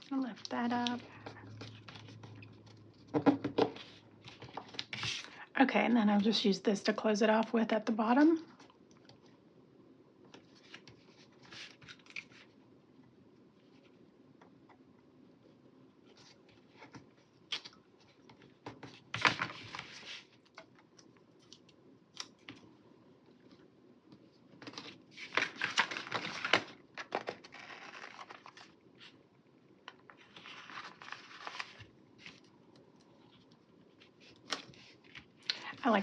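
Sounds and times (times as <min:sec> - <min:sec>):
paper rustling and peeling: 0:24.6 - 0:29.2, 0:30.1 - 0:32.5.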